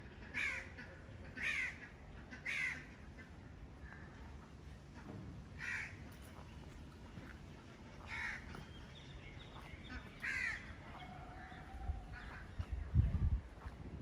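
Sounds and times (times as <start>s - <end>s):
crow cawing: 0.4s - 0.7s, 1.4s - 2.9s, 5.6s - 6.0s, 8.1s - 8.6s, 10.2s - 12.4s.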